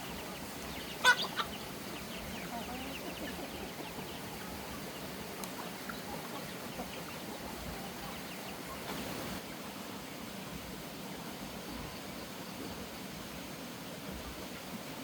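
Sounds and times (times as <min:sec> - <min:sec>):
chickens clucking: 0:00.0 - 0:10.4
steady hiss: 0:00.0 - 0:15.0.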